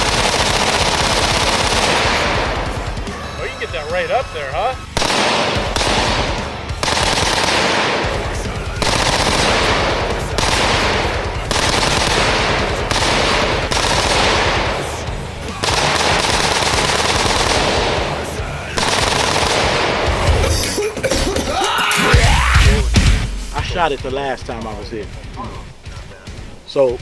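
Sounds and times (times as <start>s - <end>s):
rifle rapid gunfire: 0.0s - 20.3s.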